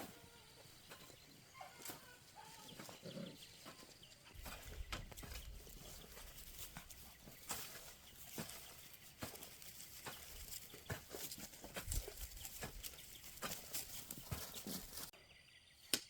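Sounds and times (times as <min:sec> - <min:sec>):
faint animal calls: 0:00.0 - 0:04.6.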